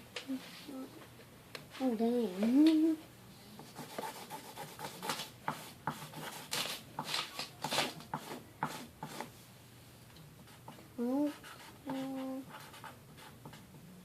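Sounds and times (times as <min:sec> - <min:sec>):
pen scratching on paper: 0:03.6 - 0:09.3, 0:10.5 - 0:13.7.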